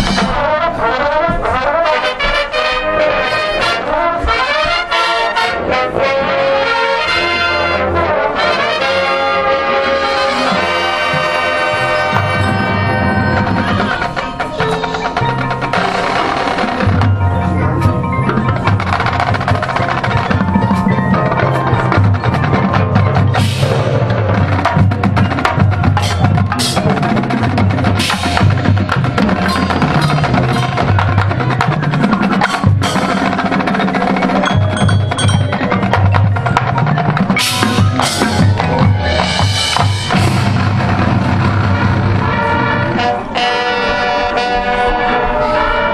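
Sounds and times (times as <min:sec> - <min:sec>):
drum rolls: 0:00.0 - 0:45.9
marching band playing: 0:00.0 - 0:45.9
sharp percussion strikes: 0:10.4 - 0:43.7
chimes and glockenspiel: 0:11.6 - 0:24.4, 0:33.7 - 0:40.2.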